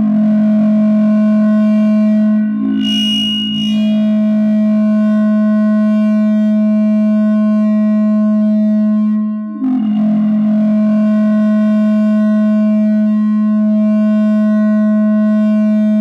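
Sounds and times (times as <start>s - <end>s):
buzzing feedback drone: 0.0s - 16.0s
noise flare with high whistle: 0.1s - 7.8s.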